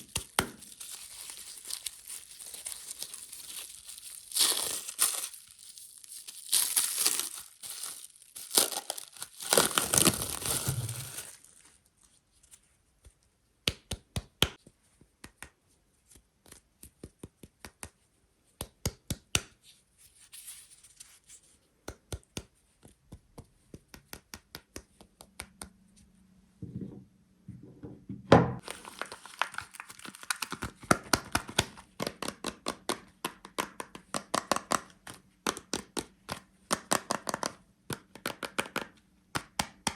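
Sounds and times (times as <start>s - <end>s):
wrapping tearing and crinkling: 0.0s - 12.3s, 28.6s - 32.0s.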